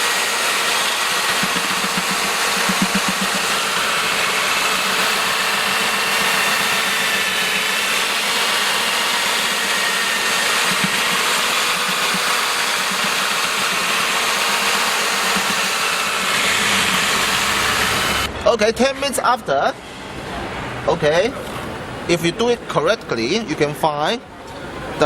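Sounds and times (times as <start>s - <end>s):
churning mixture: 0.0s - 18.3s
electric mixer motor whine: 0.0s - 18.3s.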